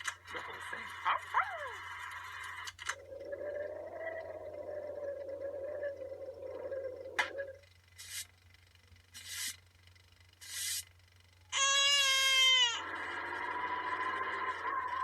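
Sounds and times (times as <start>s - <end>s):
baby crying: 11.5s - 12.8s.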